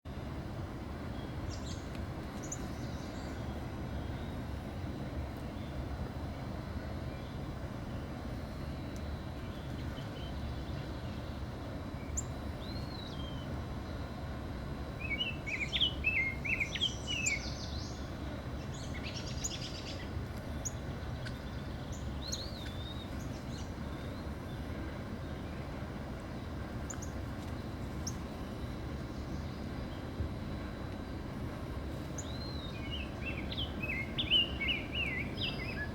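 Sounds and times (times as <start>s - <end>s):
low background rumble: 0.1s - 35.9s
bird singing whistled notes: 15.0s - 18.1s, 20.6s - 24.2s, 32.2s - 35.9s.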